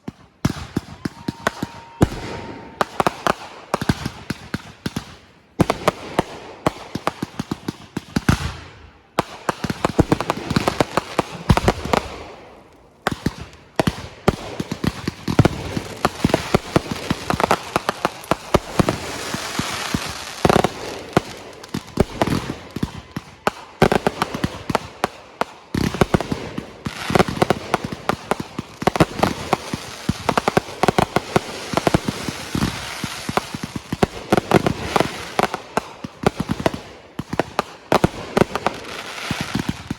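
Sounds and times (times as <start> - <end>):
fireworks popping and banging: 9.2 - 39.9.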